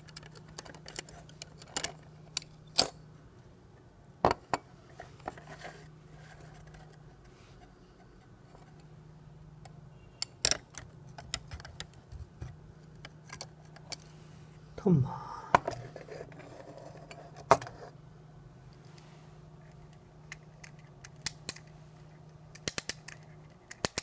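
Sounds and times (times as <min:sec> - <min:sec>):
faint steady hum: 0:00.0 - 0:24.0
clicks of small hard parts: 0:22.5 - 0:24.0.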